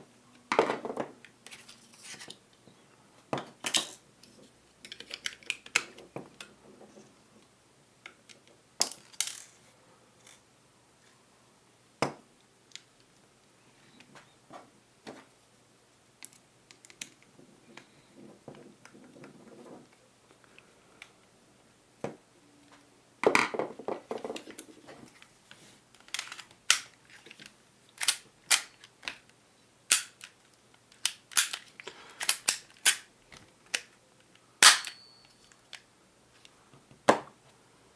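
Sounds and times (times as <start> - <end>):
airsoft pistol clicks and snaps: 29.9 - 30.3.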